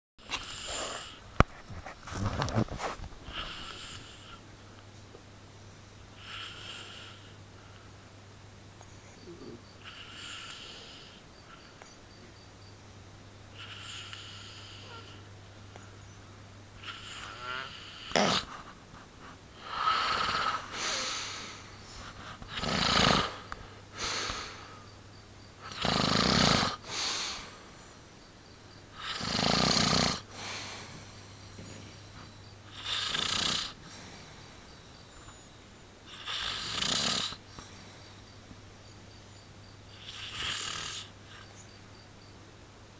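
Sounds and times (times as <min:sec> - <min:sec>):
person snoring heavily: 0:00.3 - 0:01.2, 0:03.2 - 0:04.4, 0:09.8 - 0:11.2, 0:13.6 - 0:15.2, 0:16.8 - 0:18.5, 0:19.6 - 0:21.8, 0:22.4 - 0:24.8, 0:25.6 - 0:27.6, 0:29.0 - 0:31.7, 0:32.7 - 0:34.1, 0:36.1 - 0:37.4, 0:39.9 - 0:41.5.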